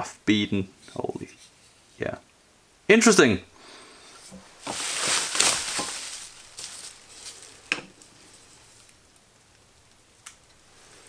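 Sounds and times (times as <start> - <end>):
rustle of handling: 3.6 - 11.0.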